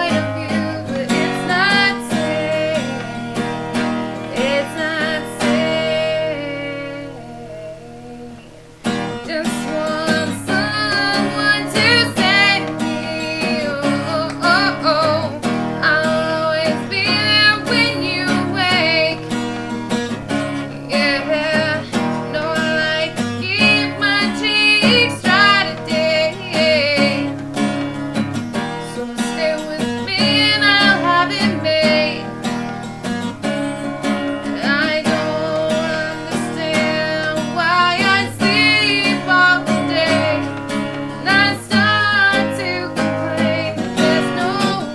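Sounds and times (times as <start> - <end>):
person singing with vibrato: 0.0 - 44.9
strummed acoustic guitar: 0.0 - 44.9.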